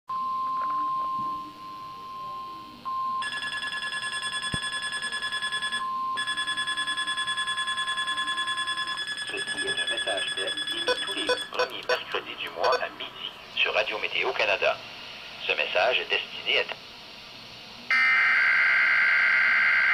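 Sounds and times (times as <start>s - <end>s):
steady warning tone: 0.1s - 13.2s
rapid electronic alarm beeping: 3.2s - 12.9s.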